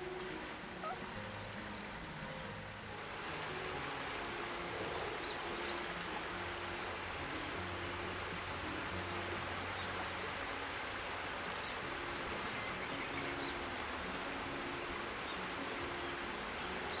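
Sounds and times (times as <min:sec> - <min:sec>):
river water flowing: 0:00.0 - 0:17.0
faint bird chirps: 0:00.7 - 0:01.9.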